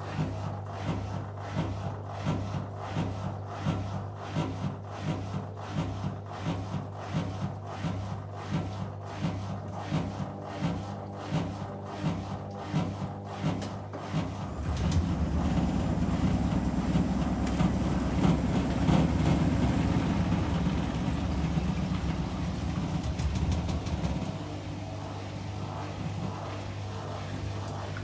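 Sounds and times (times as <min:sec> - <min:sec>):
washing machine drum rumbling: 0:14.3 - 0:28.0.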